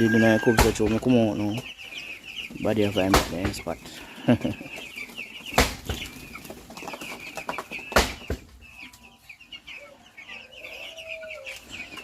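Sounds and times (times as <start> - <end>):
chickens chirping and clucking: 0.0 - 12.0
sharp knocks: 3.1 - 3.6, 5.5 - 6.1, 7.9 - 8.5.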